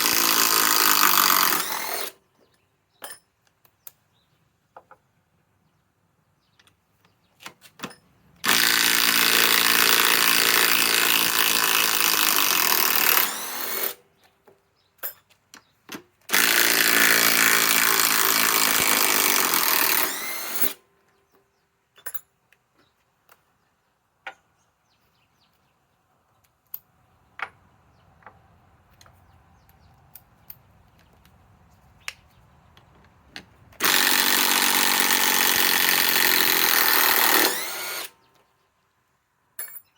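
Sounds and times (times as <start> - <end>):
impact driver hammering: 33.8 - 38.1.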